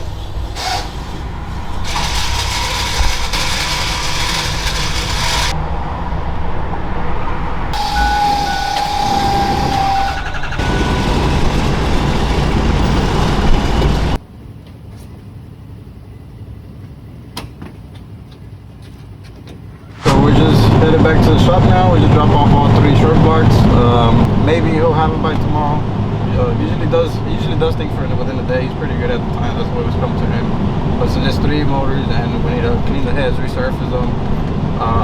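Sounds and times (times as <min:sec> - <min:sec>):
steady tone: 0:00.0 - 0:14.2
vehicle noise: 0:00.0 - 0:16.8, 0:17.8 - 0:35.0.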